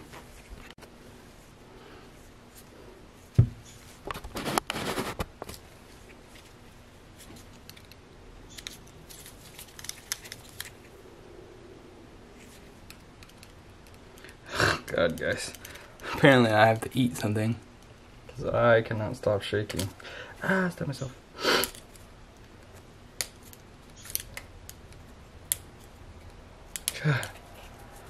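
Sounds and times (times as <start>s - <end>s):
scraping and rustling: 2.5s - 7.9s.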